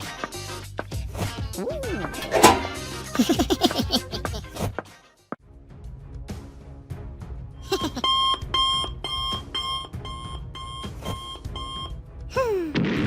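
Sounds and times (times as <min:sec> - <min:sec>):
background music: 0:00.0 - 0:12.7
electronic alarm beeping: 0:08.0 - 0:11.9.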